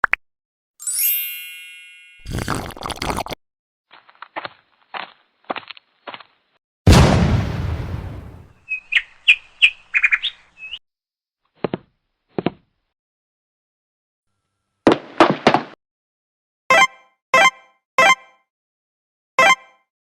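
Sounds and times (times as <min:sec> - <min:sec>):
loud hit: 0:06.9 - 0:08.5
bird chirps: 0:08.5 - 0:10.8.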